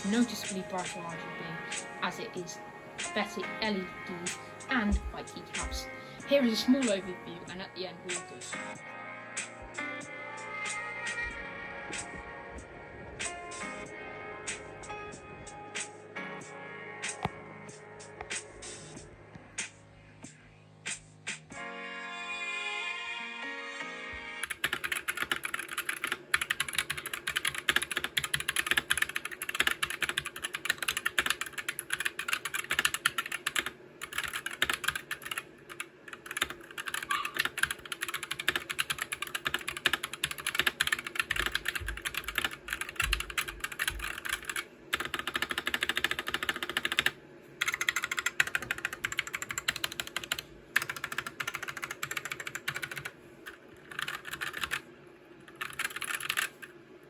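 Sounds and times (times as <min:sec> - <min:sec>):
mechanical keyboard typing: 0:24.4 - 0:53.1, 0:53.8 - 0:54.8, 0:55.5 - 0:56.7.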